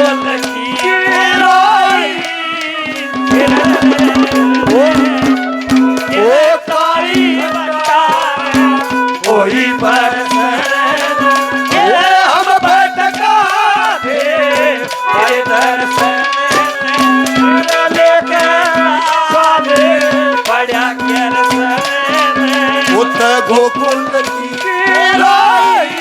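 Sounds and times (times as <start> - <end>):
fast rattling percussion: 0.0 - 26.0
person singing: 0.0 - 26.0
melody over held drone: 3.1 - 6.3, 21.2 - 26.0.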